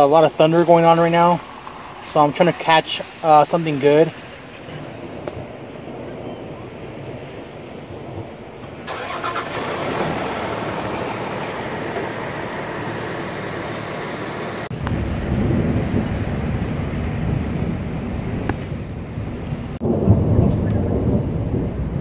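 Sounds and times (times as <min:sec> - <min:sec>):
steady rushing noise: 0:00.0 - 0:22.0
low rumble of thunder: 0:03.9 - 0:13.7, 0:14.6 - 0:22.0.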